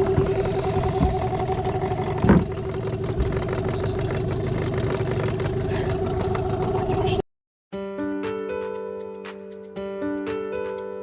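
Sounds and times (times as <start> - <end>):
motor pulsing hum: 0.0 - 7.2.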